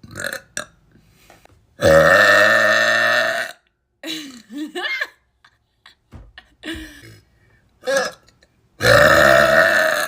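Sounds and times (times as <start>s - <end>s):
woman burping: 1.8s - 3.6s, 6.6s - 10.0s.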